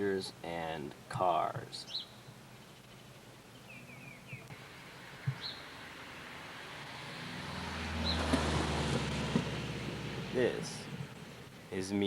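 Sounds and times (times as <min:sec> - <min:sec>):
small birds chirping: 0:01.4 - 0:06.3
vehicle engine approaching: 0:04.5 - 0:11.7.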